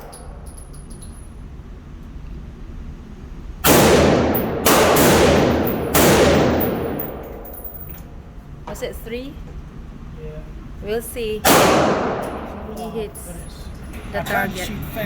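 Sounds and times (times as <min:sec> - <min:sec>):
rifle shots with echo: 0:03.6 - 0:07.8, 0:11.4 - 0:12.7.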